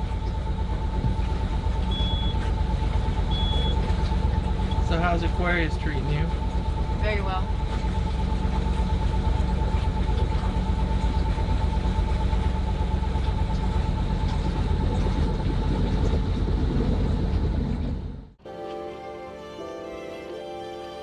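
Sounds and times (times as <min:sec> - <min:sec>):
boat engine droning: 0:00.0 - 0:21.0
music: 0:18.4 - 0:21.0.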